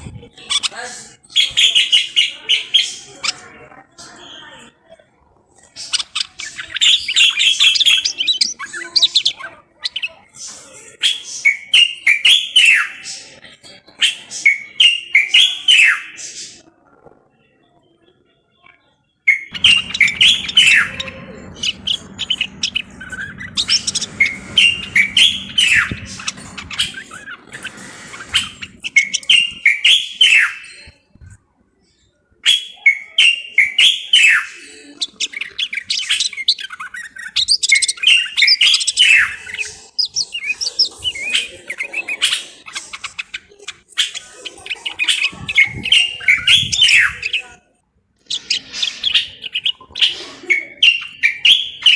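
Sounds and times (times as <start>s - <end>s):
bird singing whistled phrases: 19.3s - 30.8s
faint low hum: 19.5s - 29.6s.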